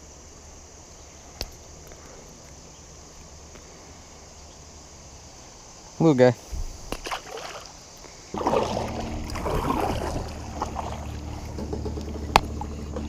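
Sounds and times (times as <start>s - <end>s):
water splashing around kayak: 6.5s - 13.0s
low rumble: 8.3s - 13.0s.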